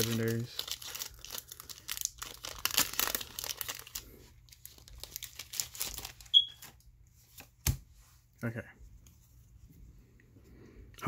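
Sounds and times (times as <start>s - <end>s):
foil wrapper crinkling and tearing: 0.0s - 6.8s.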